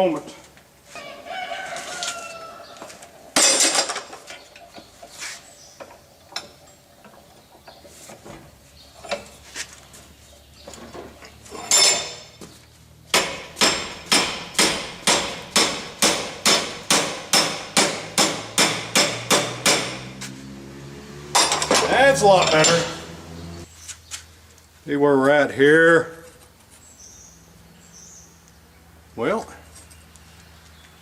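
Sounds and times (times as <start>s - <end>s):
tools scraping: 0.9s - 6.7s, 10.6s - 16.5s, 21.4s - 23.2s
hammer striking steel on anvil: 13.1s - 20.2s.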